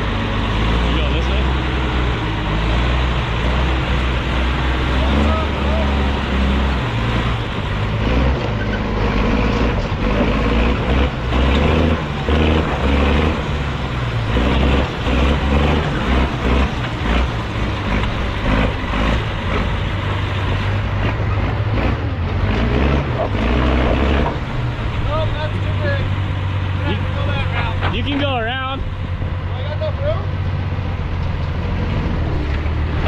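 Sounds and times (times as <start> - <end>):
truck engine rumbling at low speed: 0.0 - 33.0
knocks and clunks: 26.8 - 29.4.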